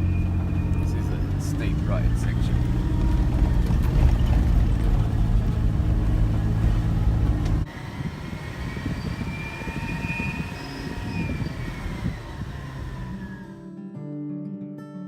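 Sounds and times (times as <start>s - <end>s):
faint whistling tones: 0.0s - 4.3s, 8.1s - 13.6s
deep steady vehicle engine: 0.0s - 13.6s.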